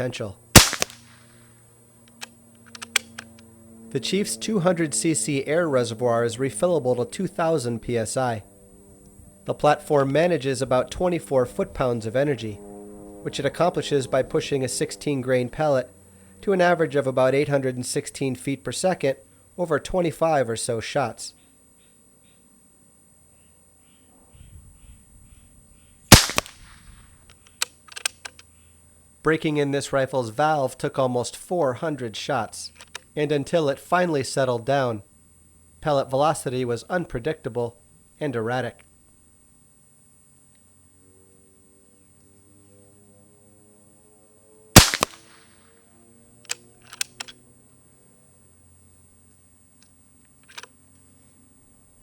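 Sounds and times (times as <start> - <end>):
short clicks: 0.6 - 1.2, 26.1 - 26.8, 44.8 - 45.4
air rifle shot: 0.6 - 1.3, 26.1 - 27.0, 44.8 - 45.5.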